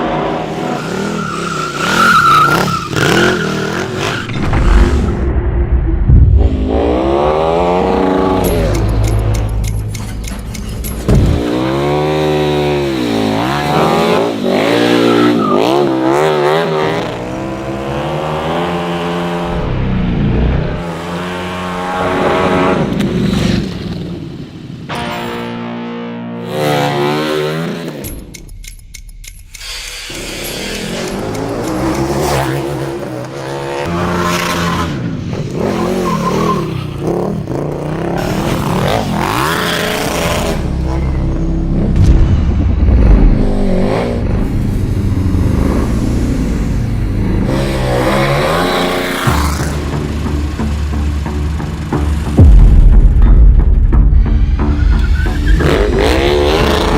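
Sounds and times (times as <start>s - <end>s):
loud thump: 4.3s - 7.2s, 11.0s - 11.6s, 41.9s - 44.7s
motorcycle engine revving: 6.1s - 24.2s, 29.7s - 53.0s, 54.6s - 56.9s.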